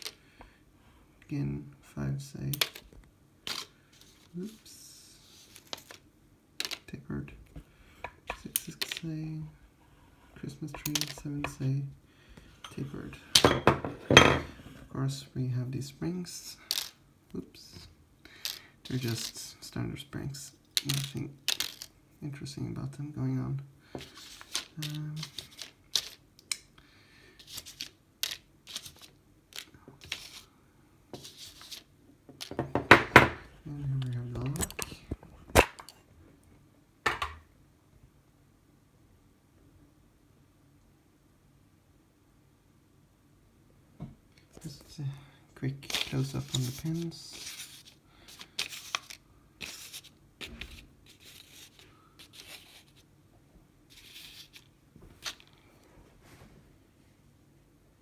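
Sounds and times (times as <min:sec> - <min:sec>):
scrapes and rustles of small parts: 0:00.0 - 0:00.2, 0:02.5 - 0:09.3, 0:10.0 - 0:11.7, 0:16.3 - 0:17.0, 0:17.6 - 0:19.8, 0:20.4 - 0:22.0, 0:24.0 - 0:26.7, 0:27.3 - 0:30.5, 0:31.2 - 0:32.8, 0:45.7 - 0:53.1, 0:53.9 - 0:56.7.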